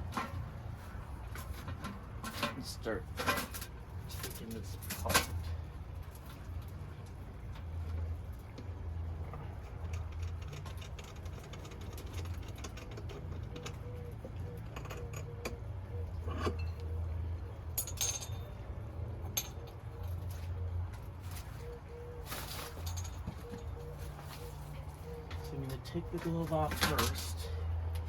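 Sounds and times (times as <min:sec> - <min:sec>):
low steady hum: 0:00.0 - 0:28.0
light clinks and clicks: 0:17.7 - 0:18.6.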